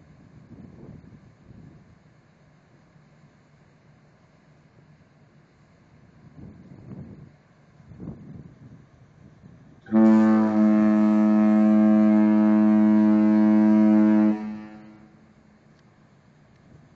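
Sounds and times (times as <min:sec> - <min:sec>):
ship horn long low blast: 0:09.8 - 0:15.6.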